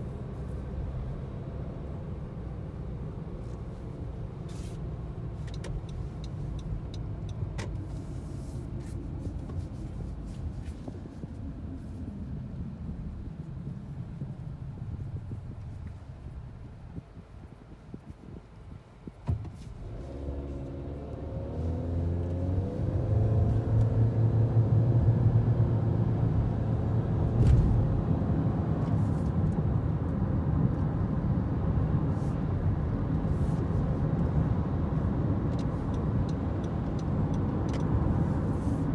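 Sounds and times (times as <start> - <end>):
car engine accelerating: 19.7 - 38.9.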